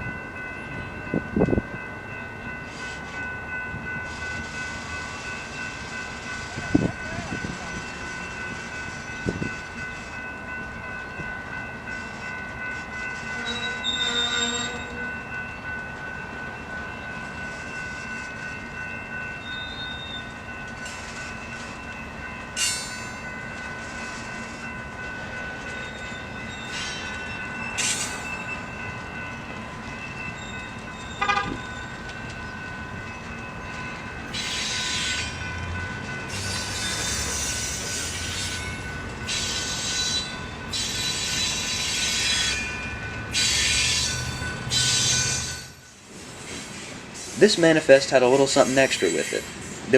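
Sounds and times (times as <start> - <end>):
rumble of train cars: 0.0 - 49.9
steel wheels squealing: 13.1 - 15.1, 19.4 - 21.0, 25.6 - 29.3, 29.9 - 32.6, 34.3 - 47.6, 48.4 - 49.9.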